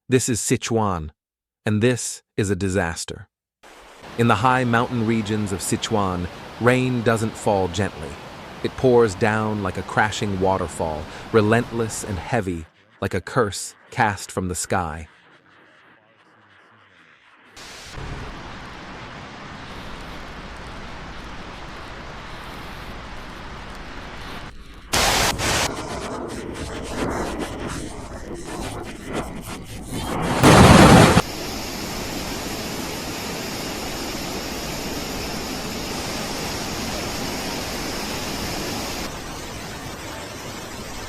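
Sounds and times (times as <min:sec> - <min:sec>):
heavy water rushing: 0:03.7 - 0:12.2, 0:25.0 - 0:25.7, 0:30.2 - 0:41.0.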